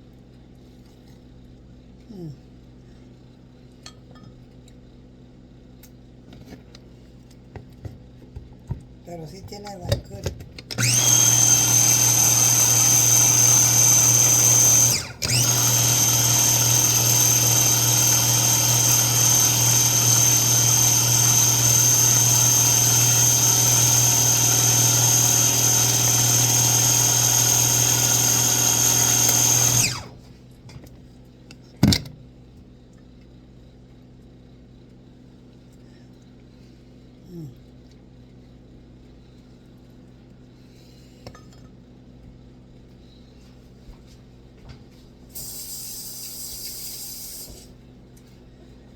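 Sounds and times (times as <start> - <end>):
electric blender grinding nuts: 10.7 - 30.2.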